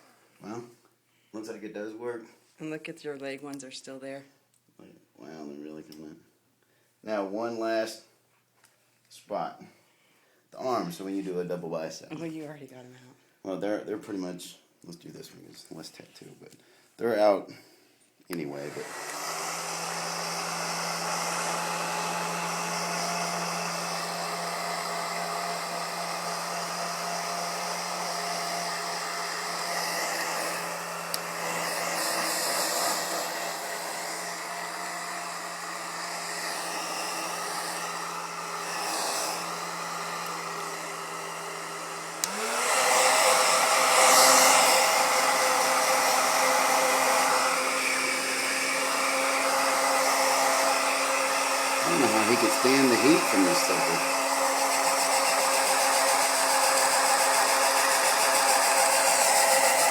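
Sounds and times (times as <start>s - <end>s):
hair dryer running: 18.3s - 59.9s.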